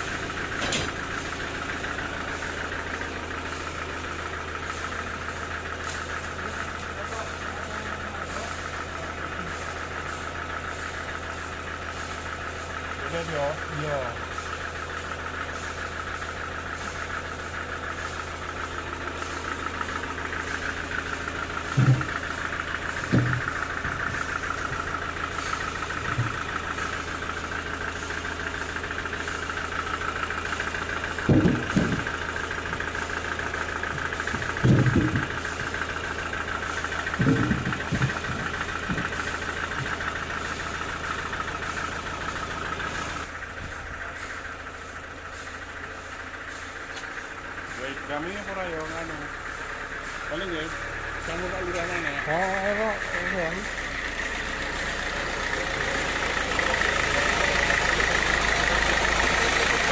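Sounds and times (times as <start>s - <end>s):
sawmill machinery whining: 0.0s - 59.9s
loud knocks: 31.2s - 32.1s, 34.4s - 35.4s.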